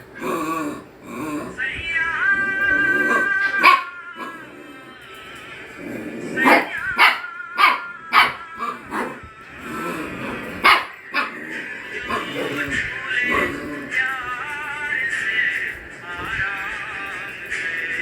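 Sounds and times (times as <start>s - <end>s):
dog barking: 3.4s - 4.3s, 6.4s - 9.3s, 10.6s - 11.4s.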